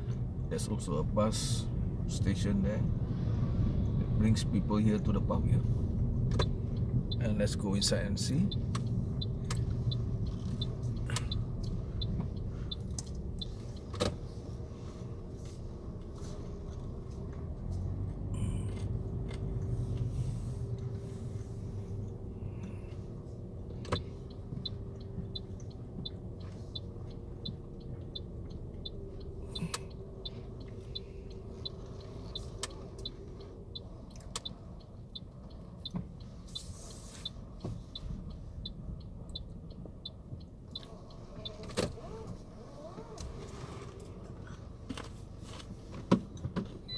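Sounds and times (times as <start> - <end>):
car engine and road rumble: 0.0 - 46.9
turn signal ticking: 0.0 - 46.9.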